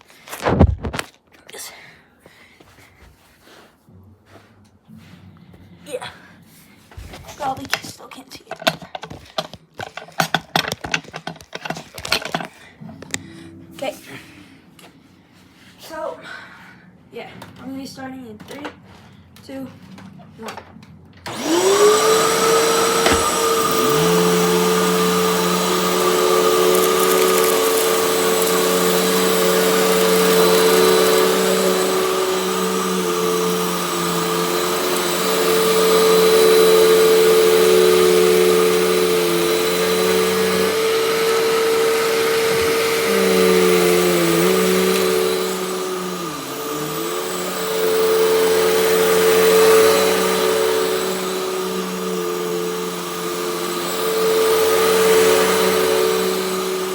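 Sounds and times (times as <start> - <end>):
vacuum cleaner motor whine: 20.5 - 56.9.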